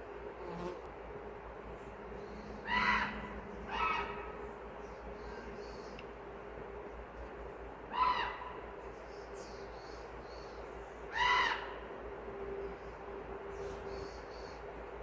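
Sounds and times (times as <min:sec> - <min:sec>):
bird calling: 0:02.3 - 0:04.4.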